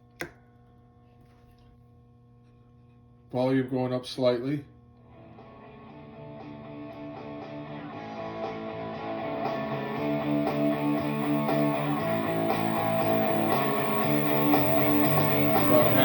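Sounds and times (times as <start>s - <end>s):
looped guitar phrase with reverb: 5.4s - 16.0s.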